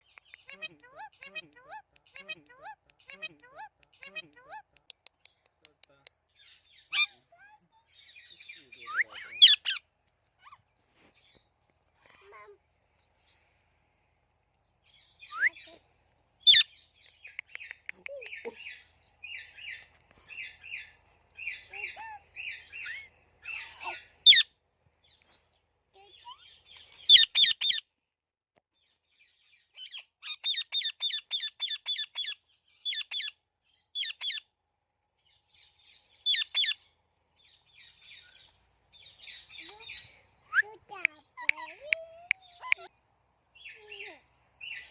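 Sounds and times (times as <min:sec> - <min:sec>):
parrot squeaking: 0:08.3 - 0:09.8, 0:16.4 - 0:16.8, 0:21.5 - 0:24.5, 0:27.1 - 0:27.8, 0:29.8 - 0:33.4, 0:34.0 - 0:34.4, 0:36.2 - 0:36.8.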